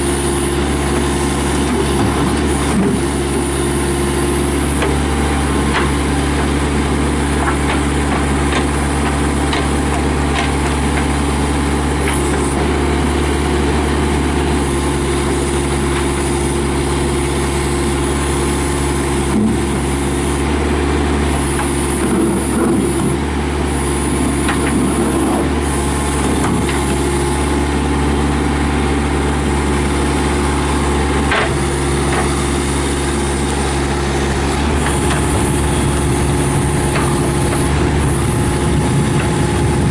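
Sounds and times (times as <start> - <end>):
diesel engine running: 0.0 - 39.9
machine knocks and clanks: 31.3 - 32.4.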